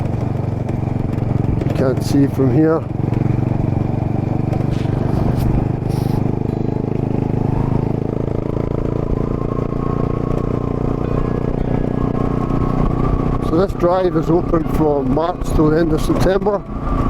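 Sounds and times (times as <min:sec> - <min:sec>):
tyres on gravel: 0:00.0 - 0:06.5
motorcycle engine running: 0:00.0 - 0:17.0.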